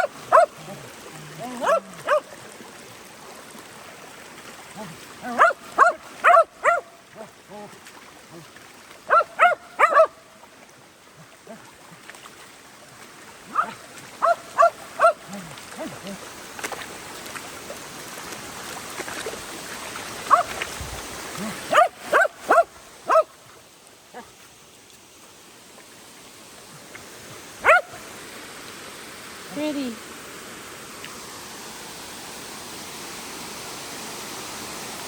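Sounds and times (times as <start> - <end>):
dog barking and yipping: 0.0 - 0.6, 1.6 - 2.3, 5.2 - 7.0, 9.1 - 10.2, 13.5 - 15.9, 20.3 - 20.5, 21.7 - 23.4, 27.6 - 28.0
creek water running: 0.0 - 35.0.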